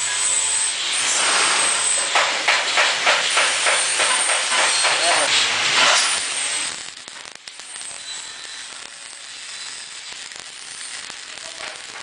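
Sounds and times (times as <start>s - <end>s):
welding arc crackling: 0.0s - 12.0s.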